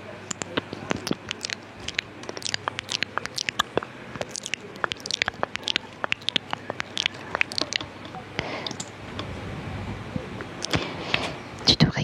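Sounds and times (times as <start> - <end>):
wet mouth clicks and smacks: 0.3 - 8.9, 10.6 - 10.8.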